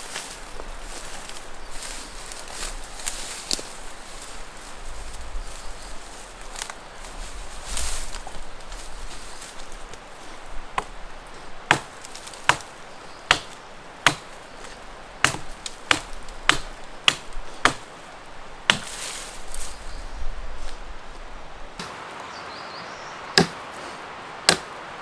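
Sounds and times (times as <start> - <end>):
axe chopping wood: 10.8 - 11.0, 11.7 - 18.0, 18.7 - 19.1, 23.4 - 23.7, 24.5 - 24.7.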